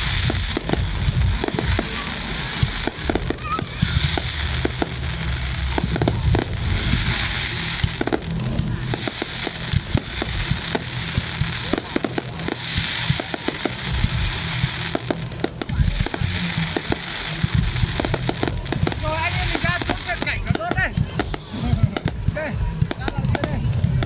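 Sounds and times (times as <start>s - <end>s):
fireworks bangs and pops: 0.0s - 24.0s
fireworks hissing crackle: 0.0s - 24.0s.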